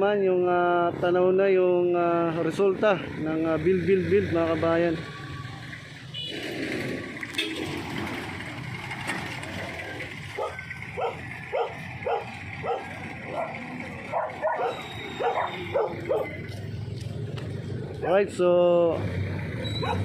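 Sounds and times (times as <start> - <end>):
steady street hum: 0.0 - 20.0
dog barking: 10.3 - 16.4, 19.7 - 20.0.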